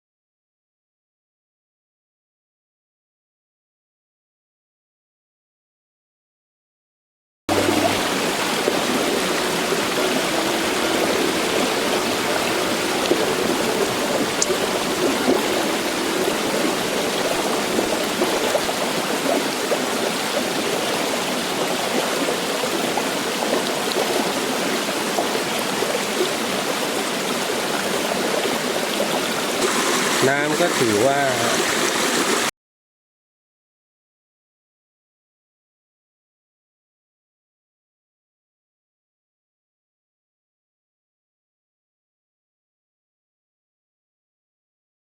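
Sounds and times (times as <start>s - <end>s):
waterfall rushing water: 7.5s - 32.5s.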